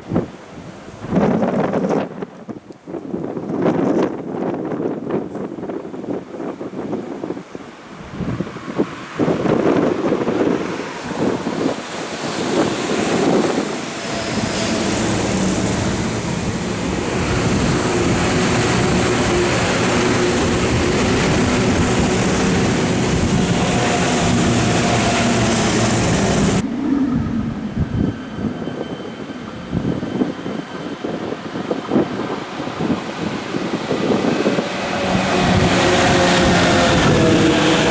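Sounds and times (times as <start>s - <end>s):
wheel-on-rail noise: 6.8s - 37.9s
electric train motor whine: 9.4s - 37.9s.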